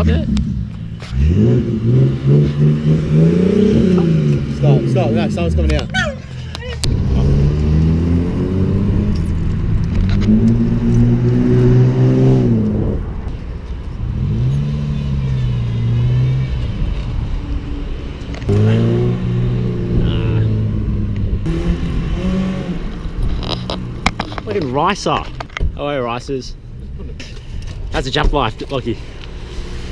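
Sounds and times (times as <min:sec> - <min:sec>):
car engine revving with exhaust leak: 0:00.0 - 0:06.0, 0:06.7 - 0:13.0, 0:18.4 - 0:25.6.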